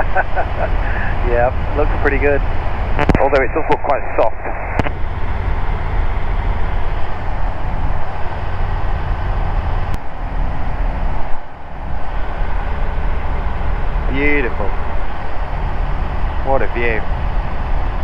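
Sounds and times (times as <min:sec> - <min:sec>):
aircraft engine and propeller: 0:00.0 - 0:18.0.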